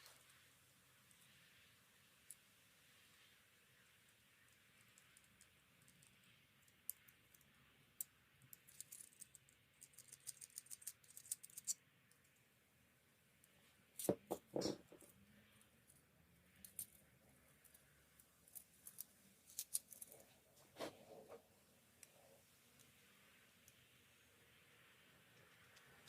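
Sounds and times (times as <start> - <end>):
small hard parts clicking: 4.7 - 12.3.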